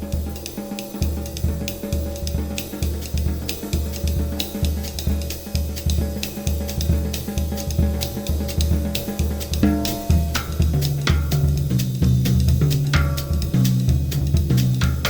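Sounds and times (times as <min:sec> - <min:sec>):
bass drum beat: 0:00.0 - 0:15.0
cymbal and hi-hat ticking: 0:00.0 - 0:15.0.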